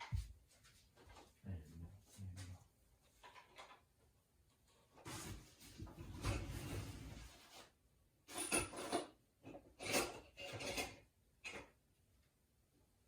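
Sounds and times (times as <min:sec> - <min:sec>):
objects rubbing and shuffling: 0:04.6 - 0:08.9
scrapes and knocks: 0:04.6 - 0:11.7.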